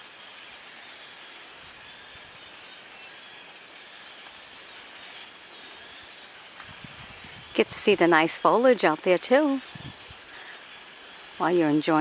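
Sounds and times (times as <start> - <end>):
flock of blackbirds screaming: 9.4 - 11.8.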